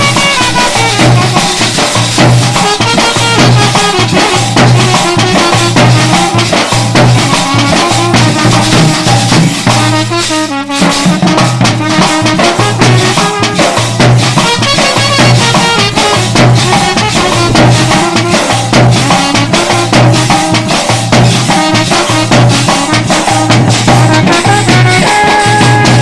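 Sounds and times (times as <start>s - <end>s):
band playing lively tune: 0.0s - 26.0s
percussion strokes: 0.0s - 26.0s
held melody notes: 7.2s - 20.6s, 21.6s - 26.0s.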